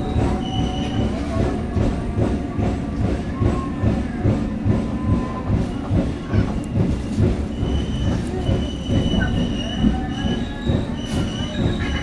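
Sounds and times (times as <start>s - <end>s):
train rumbling on rails: 0.0s - 12.0s
high wheel squeal: 7.5s - 12.0s.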